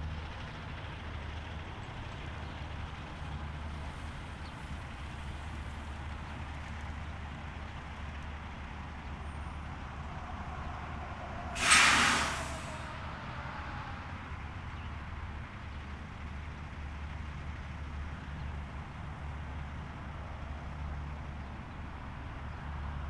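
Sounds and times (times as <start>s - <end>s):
road traffic noise: 0.0s - 21.8s
truck air brakes hissing: 2.9s - 16.3s.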